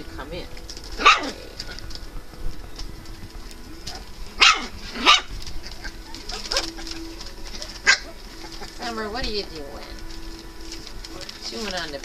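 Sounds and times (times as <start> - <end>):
puppies yipping: 0.2 - 10.9.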